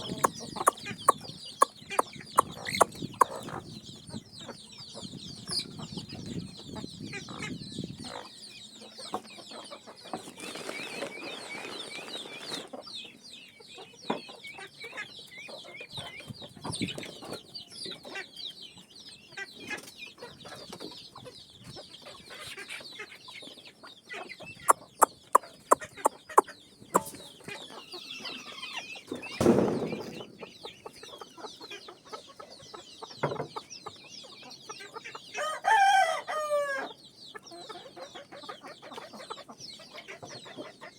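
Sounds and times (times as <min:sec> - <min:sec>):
hens clucking: 0:00.0 - 0:03.7, 0:24.6 - 0:28.5.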